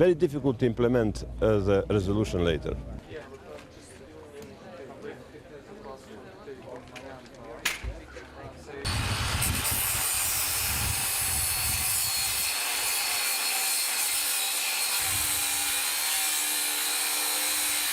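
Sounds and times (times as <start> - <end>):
angle grinder cutting steel: 8.9 - 17.9.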